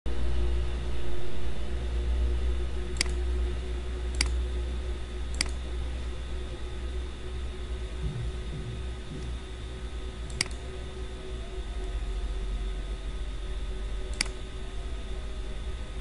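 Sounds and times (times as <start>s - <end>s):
steady low hum and hiss: 0.1s - 16.0s
computer mouse clicks: 2.9s - 3.2s, 4.1s - 4.4s, 5.3s - 5.6s, 10.3s - 10.6s, 14.1s - 14.4s.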